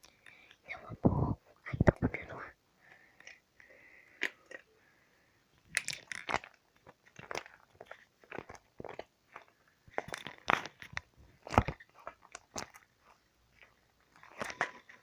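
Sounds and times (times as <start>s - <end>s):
slime crackling and popping: 5.7s - 15.0s.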